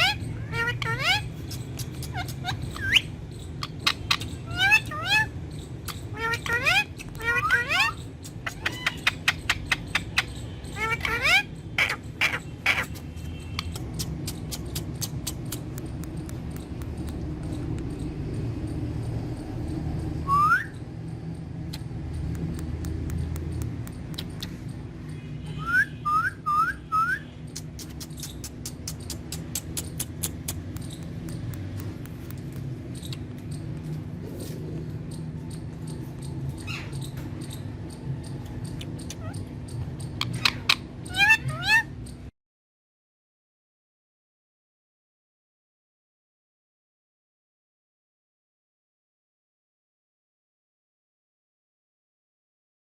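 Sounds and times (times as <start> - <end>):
parrot chirps and squawks: 0.0 - 18.8, 19.4 - 21.0, 21.6 - 42.3
sharp clicks: 13.6 - 18.0, 21.6 - 24.8, 27.5 - 34.0.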